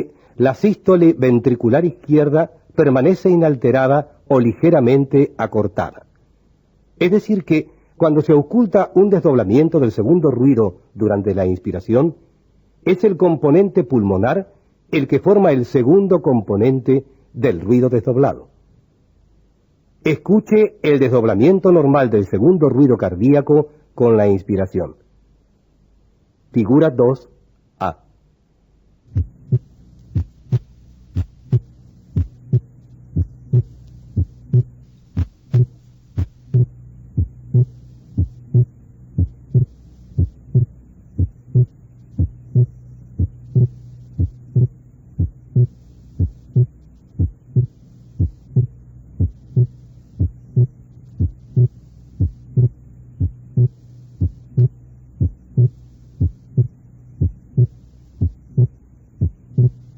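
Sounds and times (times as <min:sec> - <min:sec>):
steady low hum: 0:00.0 - 0:59.9
heartbeat through stethoscope: 0:29.1 - 0:59.9.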